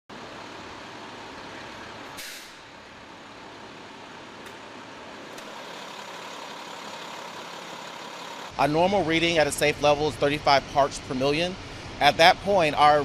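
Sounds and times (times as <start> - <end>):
air brakes hiss: 2.2 - 2.7
truck engine running: 2.8 - 10.7.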